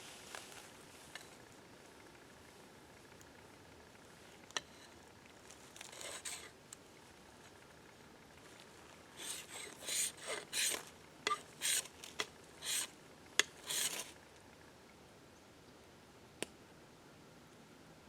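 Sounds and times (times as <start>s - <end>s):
fire starter scraping bark: 5.6s - 6.6s, 9.1s - 14.2s.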